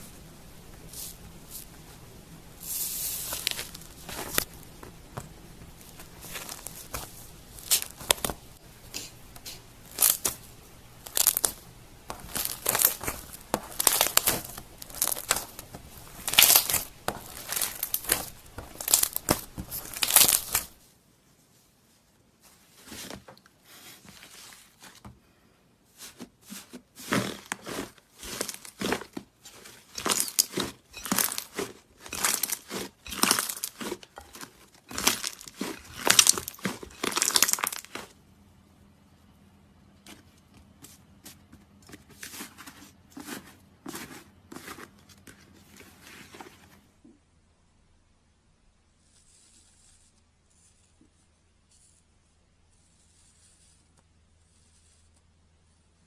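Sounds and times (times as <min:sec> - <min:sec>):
slime squished crackling and popping: 0:02.9 - 0:20.8, 0:27.1 - 0:29.2, 0:30.0 - 0:38.1.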